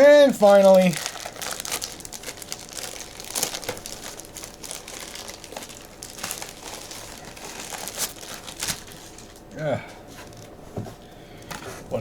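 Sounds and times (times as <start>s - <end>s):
packaging crinkling: 0.0s - 9.6s.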